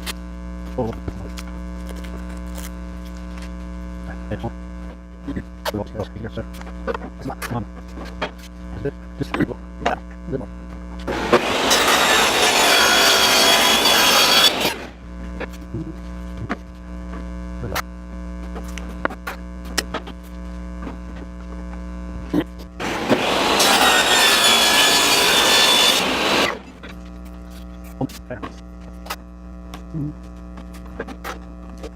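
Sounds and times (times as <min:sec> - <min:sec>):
saw cutting plexiglass: 0:11.1 - 0:15.1, 0:22.8 - 0:26.9
saw motor hum: 0:11.1 - 0:15.2, 0:22.8 - 0:27.0.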